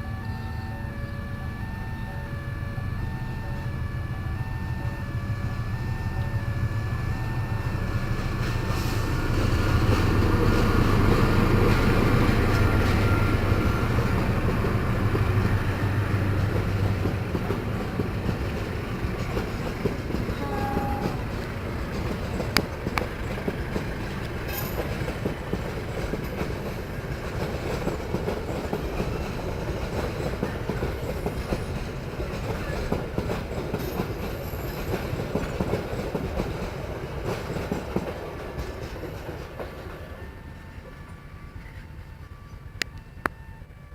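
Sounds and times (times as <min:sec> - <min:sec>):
train rumble: 0:00.0 - 0:43.9
train wheels clattering on rails: 0:07.8 - 0:42.1.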